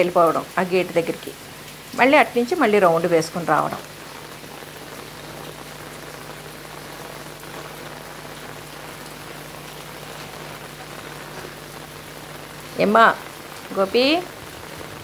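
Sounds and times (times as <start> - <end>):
rain falling on a terrace: 0.0 - 15.0.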